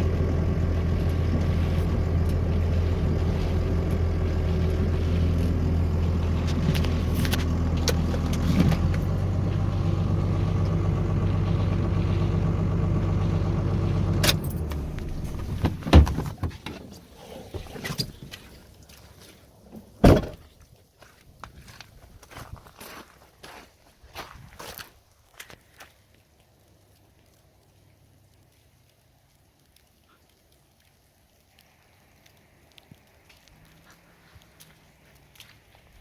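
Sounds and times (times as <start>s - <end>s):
vehicle engine idling: 0.0s - 20.4s
sharp thumps: 14.2s - 18.4s.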